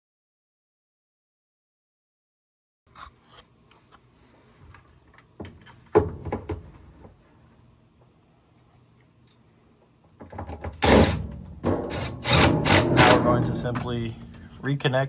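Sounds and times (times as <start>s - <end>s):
pump rubbing and clicking: 11.9s - 14.5s.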